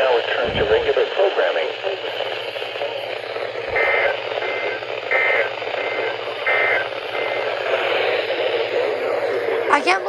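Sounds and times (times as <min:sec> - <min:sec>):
receiver static: 0:00.0 - 0:10.0
two-tone digital data bursts: 0:03.8 - 0:07.5.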